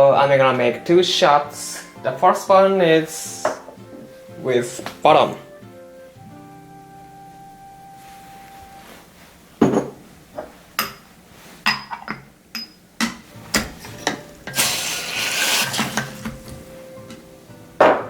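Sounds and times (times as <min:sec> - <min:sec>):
soft background music: 0:00.0 - 0:09.3, 0:13.0 - 0:18.0
espresso machine hissing: 0:14.5 - 0:16.3.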